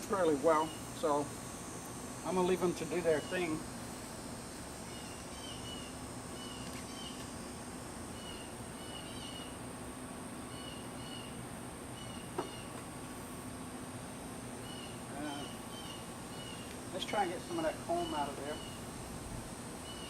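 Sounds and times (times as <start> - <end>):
honeybees humming: 0.0 - 20.0
bird chirping: 14.6 - 16.7.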